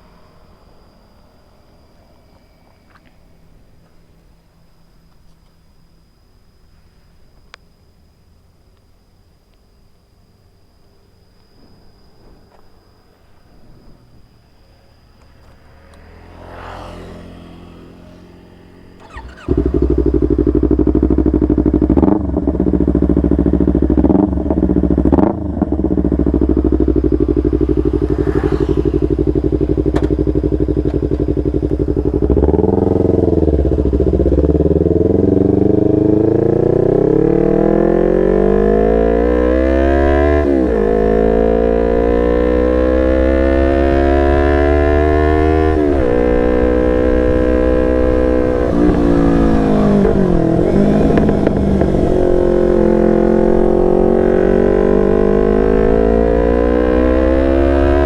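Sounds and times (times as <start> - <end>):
motorcycle engine idling and revving: 0.0 - 5.9, 11.8 - 58.0.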